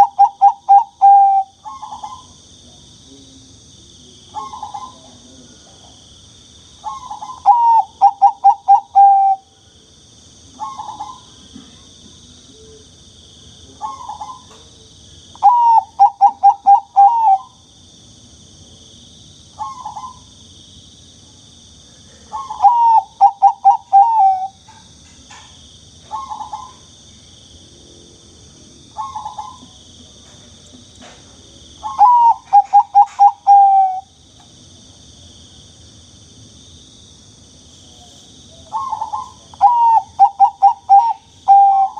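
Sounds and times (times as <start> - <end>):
dove cooing: 0.0 - 2.3, 6.8 - 9.5, 10.6 - 11.4, 13.8 - 14.6, 15.4 - 17.6, 22.3 - 24.6, 26.1 - 26.8, 29.0 - 29.7, 31.8 - 34.1, 38.6 - 41.9.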